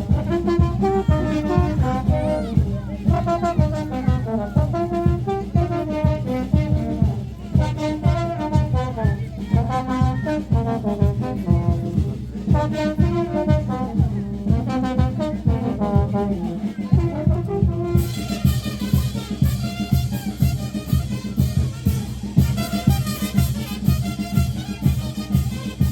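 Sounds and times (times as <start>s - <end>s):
upbeat brass music: 0.0s - 25.9s
cymbals: 17.3s - 25.9s.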